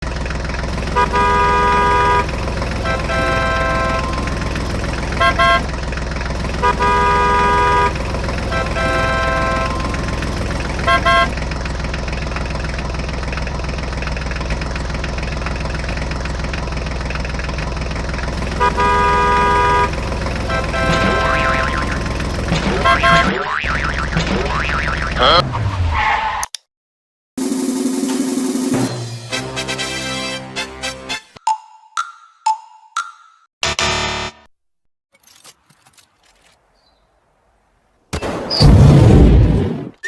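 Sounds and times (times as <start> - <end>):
engine rumble: 0.0 - 25.6
vehicle horn honking: 0.9 - 5.8, 6.4 - 11.4, 18.3 - 23.3.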